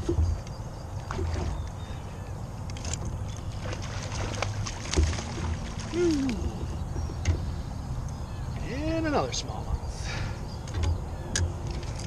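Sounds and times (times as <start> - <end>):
water sloshing around kayak: 0.0 - 8.6
small clicks and splashes: 2.6 - 7.5, 10.6 - 12.0.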